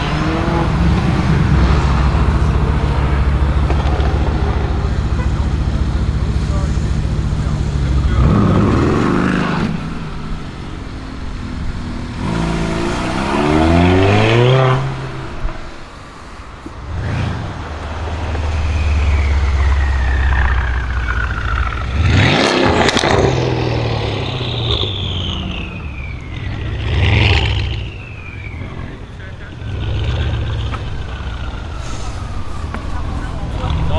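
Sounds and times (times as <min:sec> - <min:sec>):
car engine revving: 0:00.0 - 0:33.9
exhaust pops and crackles: 0:00.0 - 0:33.9
turbo whistle: 0:18.4 - 0:23.1, 0:24.0 - 0:30.4.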